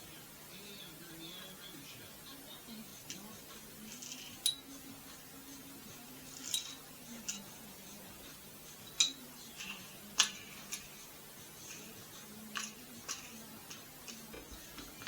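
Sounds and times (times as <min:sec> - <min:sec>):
metal parts and tools clinking: 0:03.9 - 0:04.8, 0:06.3 - 0:07.6.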